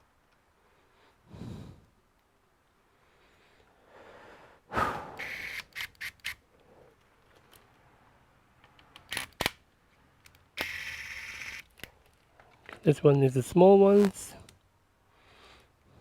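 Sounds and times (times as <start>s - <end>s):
laptop parts and tools clicking: 5.2s - 6.4s, 8.6s - 9.6s.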